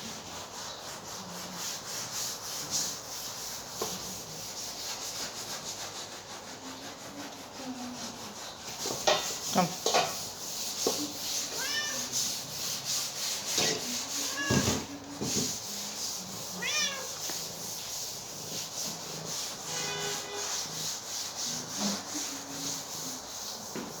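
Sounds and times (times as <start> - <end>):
scratchy rubbing noise: 0.0 - 24.0
cats meowing: 11.0 - 12.5, 13.6 - 15.0, 16.4 - 17.5.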